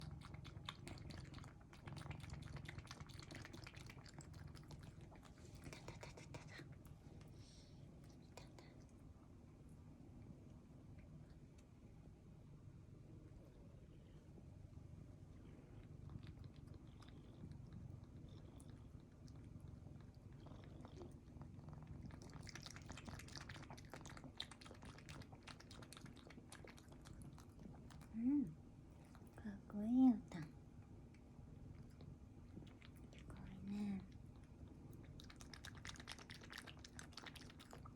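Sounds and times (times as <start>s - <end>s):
cat purring: 0.0s - 7.3s, 13.0s - 30.6s
cat lapping water: 0.0s - 9.2s, 15.3s - 37.9s.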